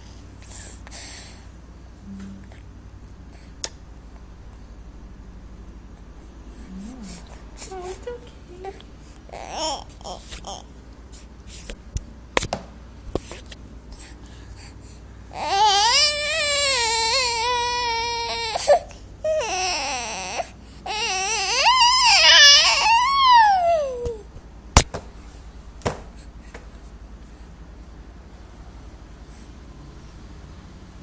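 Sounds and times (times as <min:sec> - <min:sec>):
baby crying: 0:09.3 - 0:10.7, 0:15.4 - 0:24.3.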